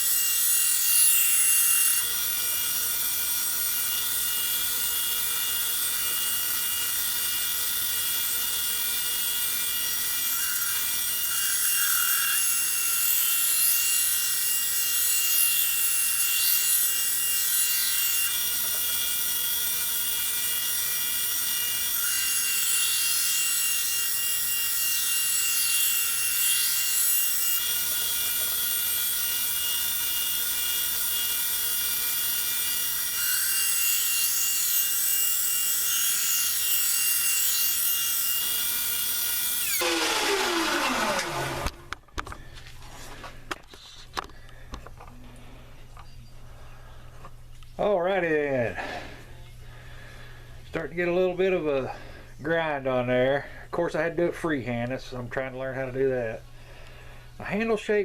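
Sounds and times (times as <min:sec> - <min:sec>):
belt sander whine: 0:00.0 - 0:42.4.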